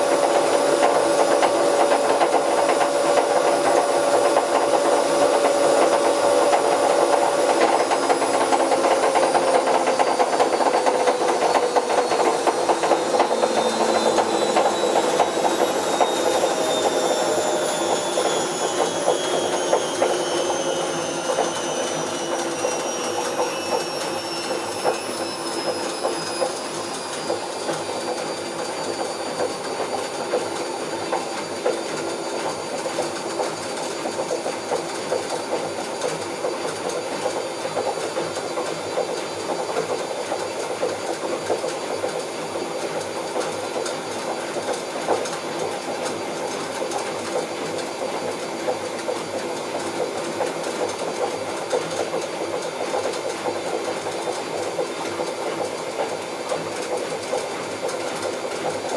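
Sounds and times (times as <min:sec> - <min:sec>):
washing machine drum rumbling: 0:00.0 - 0:18.3
high motor whine: 0:00.0 - 0:34.8.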